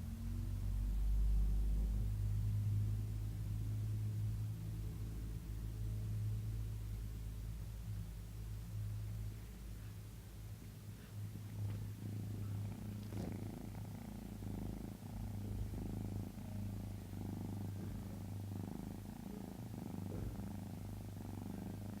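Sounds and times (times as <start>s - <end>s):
cat snoring: 11.0s - 22.0s.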